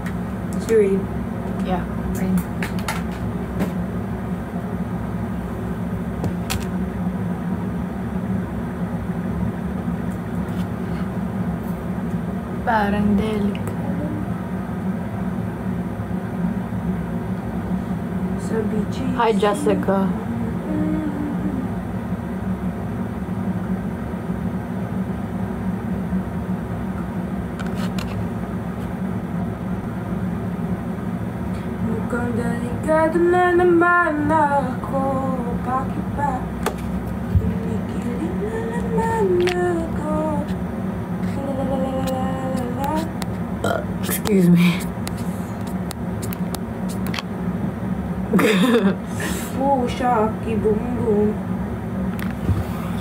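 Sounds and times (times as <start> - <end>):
low mechanical hum: 0.0 - 53.0.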